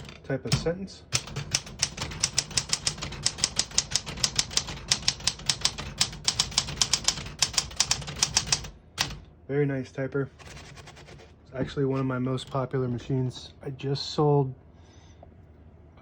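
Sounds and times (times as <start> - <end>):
manual typewriter typing: 0.0 - 9.3, 10.4 - 11.2, 12.3 - 12.7.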